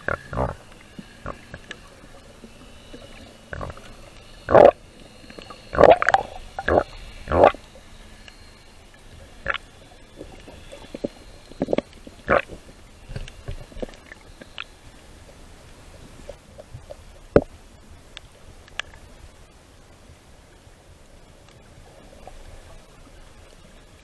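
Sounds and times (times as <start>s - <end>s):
underwater bubbles gurgling: 0.0s - 19.1s.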